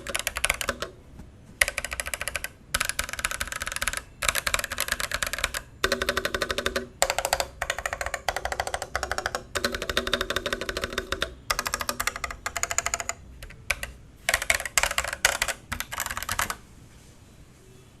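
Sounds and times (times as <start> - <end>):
mechanical keyboard typing: 0.0 - 1.0, 1.6 - 16.6.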